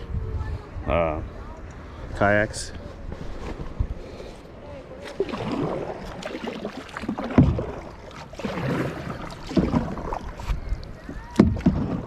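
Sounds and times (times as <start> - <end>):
paddle splashing through water: 4.9 - 12.0.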